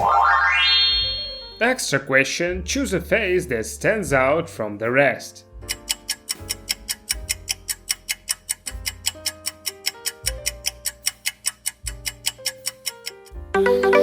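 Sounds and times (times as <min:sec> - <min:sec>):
background music with ticking beat: 0:00.0 - 0:14.0.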